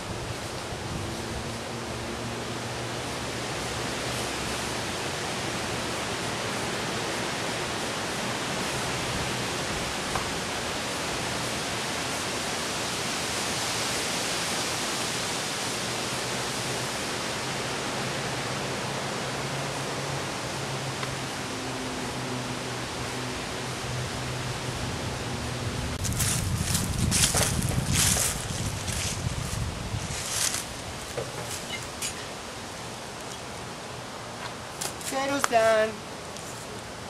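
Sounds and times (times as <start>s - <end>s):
microwave electrical hum: 17.1s - 33.7s.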